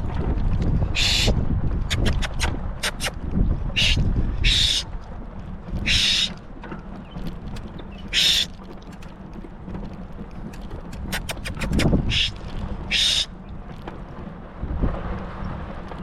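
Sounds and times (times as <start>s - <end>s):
wind rumbling on microphone: 0.0s - 16.0s
sharp clicks: 10.5s - 12.4s.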